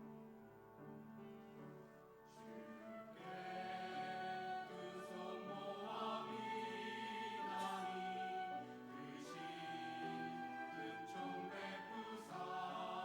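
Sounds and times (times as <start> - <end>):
group singing a hymn: 2.6 - 13.0.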